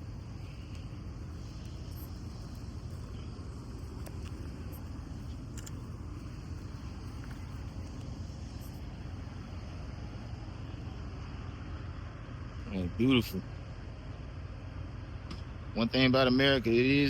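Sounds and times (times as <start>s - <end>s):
low outdoor rumble: 0.0s - 17.0s
faint high ticks: 0.4s - 8.7s.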